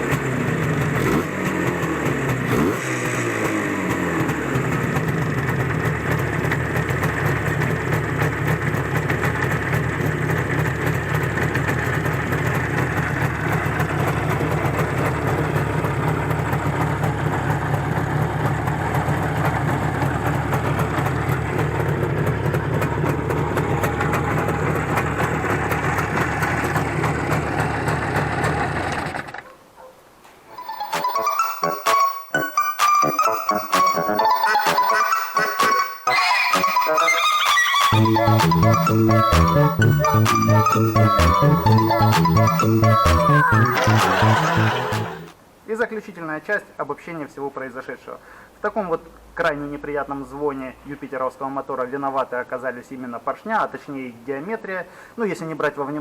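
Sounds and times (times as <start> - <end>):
two-stroke motorcycle engine running: 0.0 - 29.4.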